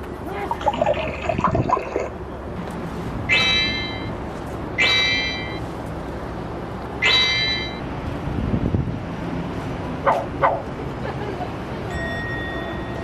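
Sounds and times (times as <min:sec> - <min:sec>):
street background noise: 0:00.0 - 0:13.0
high-pitched electronic tones: 0:03.3 - 0:04.2, 0:04.8 - 0:05.6, 0:07.0 - 0:07.8.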